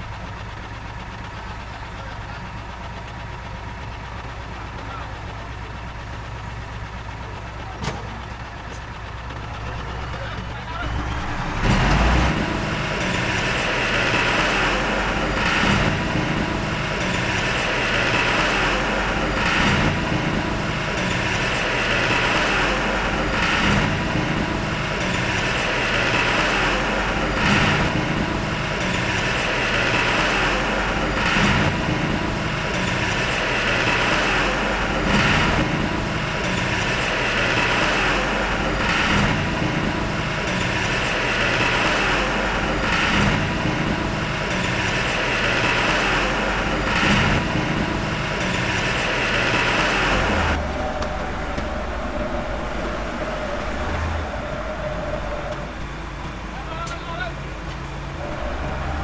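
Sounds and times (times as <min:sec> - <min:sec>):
heavy diesel machinery running: 0:00.0 - 0:59.0.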